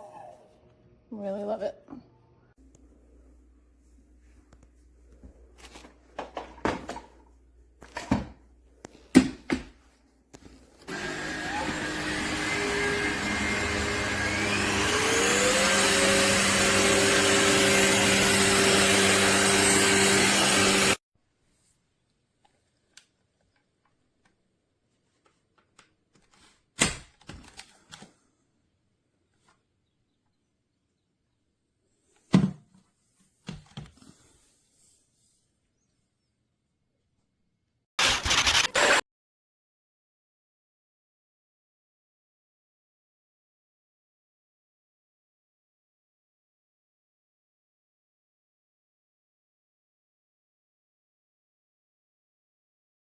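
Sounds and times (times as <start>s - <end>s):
vacuum motor whirring: 10.8s - 21.0s, 38.0s - 39.0s.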